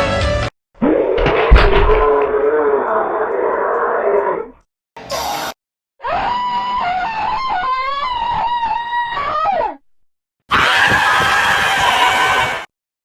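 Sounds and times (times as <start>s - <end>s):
cartoon character screaming: 10.5s - 12.5s.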